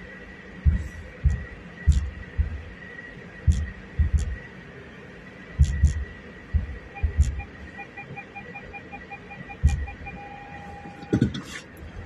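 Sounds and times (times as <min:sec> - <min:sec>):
faint high whine: 0:00.0 - 0:12.0
heavy thumps with sharp clicks: 0:00.6 - 0:04.5, 0:05.5 - 0:07.6, 0:09.6 - 0:10.0.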